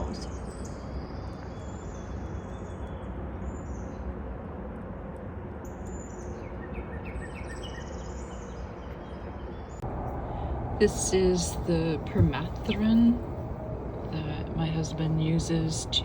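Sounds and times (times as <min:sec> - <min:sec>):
small birds chirping: 0:00.0 - 0:04.2
low outdoor rumble: 0:00.0 - 0:16.0.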